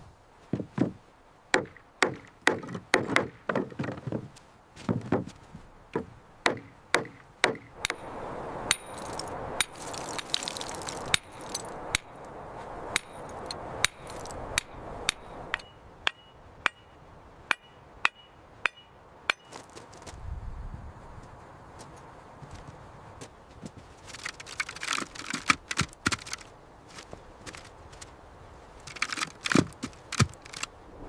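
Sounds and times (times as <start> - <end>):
hammer ringing on metal: 17.5 - 19.5.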